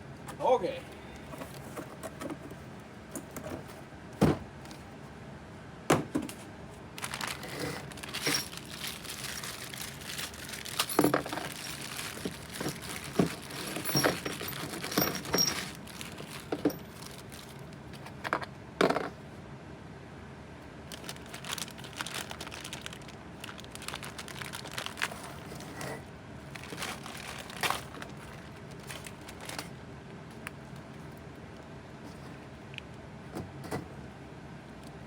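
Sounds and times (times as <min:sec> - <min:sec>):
plastic crinkling: 0:06.9 - 0:18.2, 0:20.9 - 0:29.8
metal parts clinking: 0:07.0 - 0:17.3.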